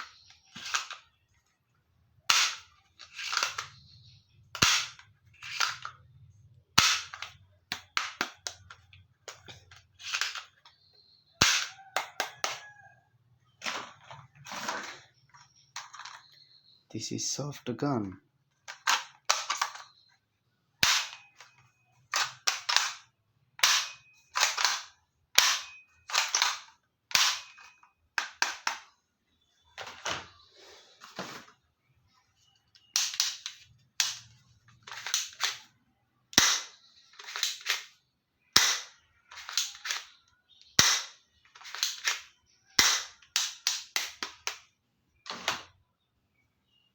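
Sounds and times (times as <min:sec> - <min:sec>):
toy gun firing sharp snaps: 0:02.3 - 0:03.7, 0:04.6 - 0:05.9, 0:06.8 - 0:08.6, 0:11.4 - 0:12.6, 0:20.8 - 0:21.2, 0:23.6 - 0:27.5, 0:33.0 - 0:34.3, 0:36.3 - 0:37.9, 0:38.5 - 0:40.1, 0:40.8 - 0:44.7.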